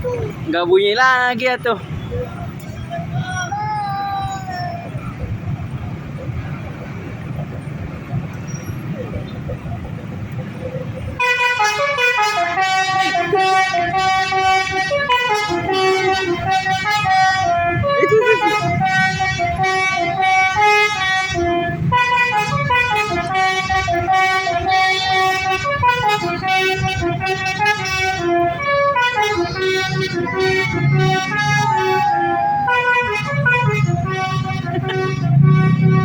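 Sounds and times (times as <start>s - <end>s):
multi-tone bus horn melody: 10.9s - 36.0s.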